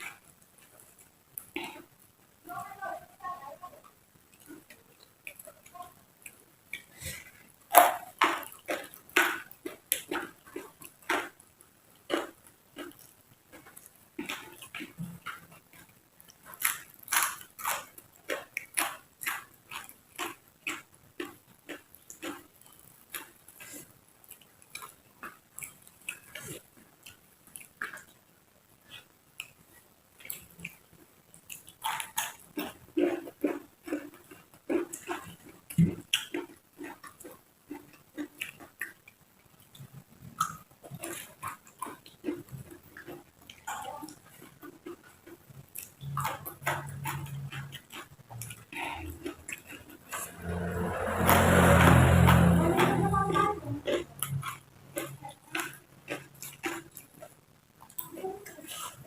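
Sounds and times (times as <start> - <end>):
crunchy chewing: 0.0 - 2.0, 3.6 - 59.0
wet mouth clicks: 4.3 - 11.4, 12.0 - 28.2, 28.8 - 59.0.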